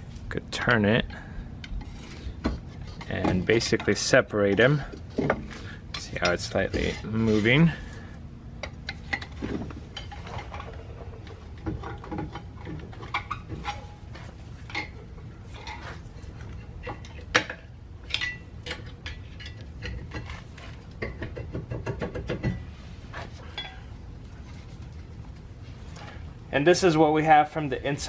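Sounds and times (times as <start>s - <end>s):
metal clinks and scrapes: 1.8s - 8.0s, 8.9s - 21.2s, 22.4s - 26.3s.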